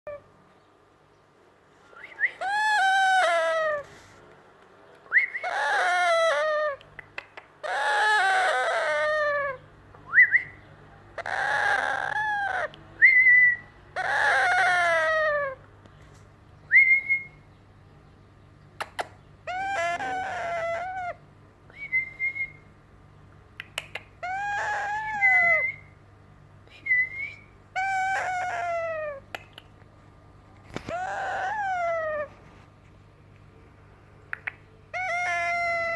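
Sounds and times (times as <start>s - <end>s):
parakeet moaning calls: 0.1s - 0.3s, 2.1s - 4.1s, 5.2s - 6.8s, 7.6s - 9.7s, 11.1s - 15.6s, 19.4s - 21.3s, 24.2s - 26.0s, 27.7s - 29.3s, 30.7s - 32.5s, 34.9s - 35.9s.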